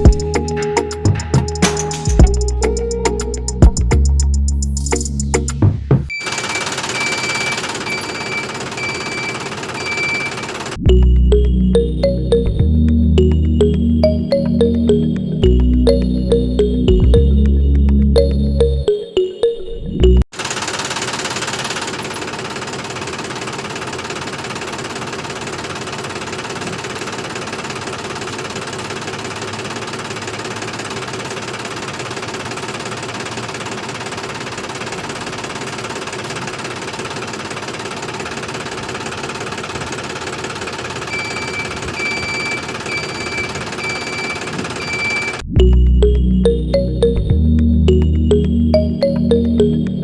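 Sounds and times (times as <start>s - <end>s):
mechanical rattling: 6.1s - 10.8s, 20.3s - 45.5s
short beeps: 6.1s - 12.2s, 41.1s - 45.5s.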